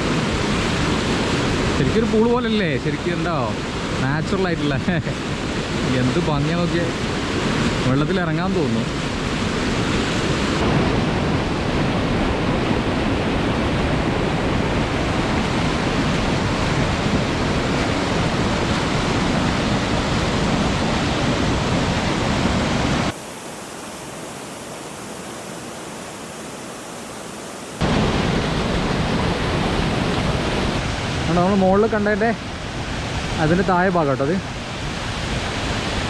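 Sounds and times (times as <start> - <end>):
waterfall rushing: 13.9 - 36.0.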